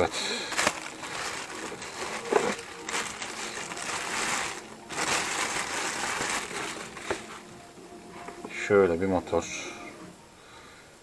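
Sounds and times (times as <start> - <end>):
packaging rustling and crinkling: 0.0 - 8.6.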